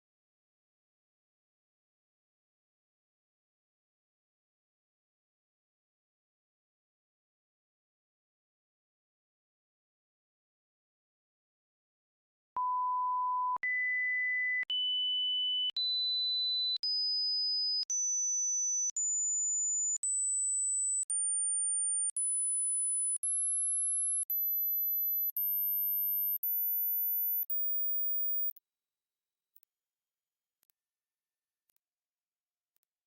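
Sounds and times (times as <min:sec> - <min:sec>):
rising sine tone beeps: 0:22.0 - 0:28.5.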